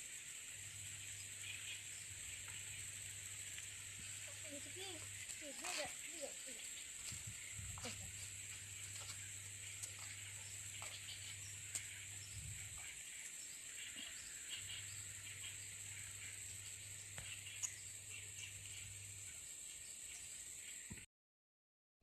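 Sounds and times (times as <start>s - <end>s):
high-pitched insect drone: 0.0s - 20.9s
faint chirps: 0.1s - 21.1s
low hum: 6.7s - 20.2s.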